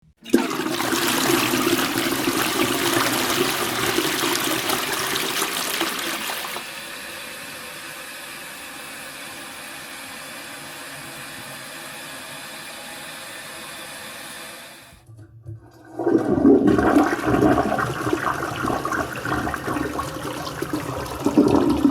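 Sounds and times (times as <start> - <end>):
water running: 0.2 - 6.8, 14.9 - 21.9
toilet flushing: 0.2 - 21.9.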